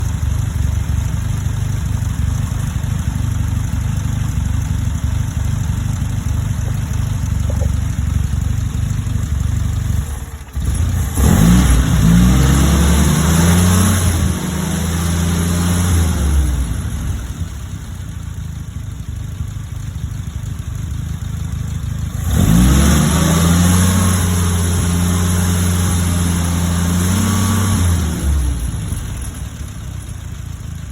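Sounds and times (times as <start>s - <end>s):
engine idling roughly: 0.0s - 30.9s
engine revving: 6.0s - 17.8s, 22.0s - 29.8s.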